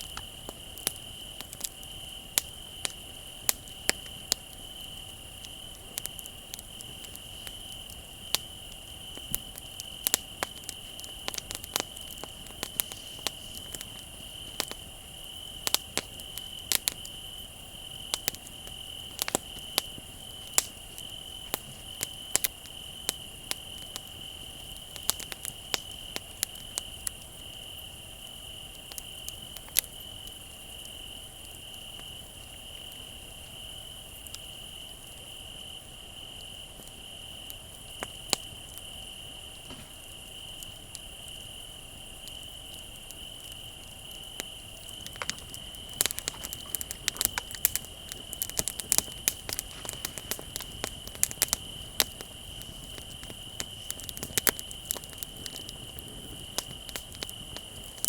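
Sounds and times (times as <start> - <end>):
bonfire crackling and popping: 0.0 - 58.0
crickets trilling: 0.0 - 58.0.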